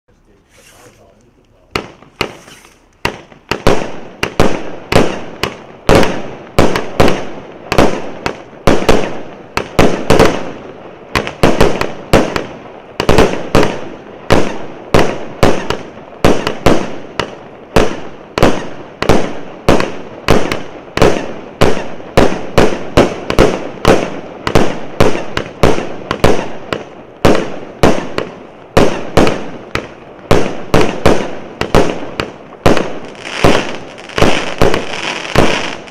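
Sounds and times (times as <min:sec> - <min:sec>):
firework cake sharp bangs: 0:00.5 - 0:35.9.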